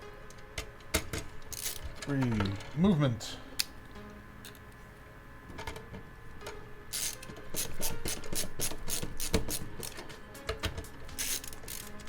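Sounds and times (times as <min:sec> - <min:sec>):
cables clicking and rubbing: 0:07.0 - 0:12.0.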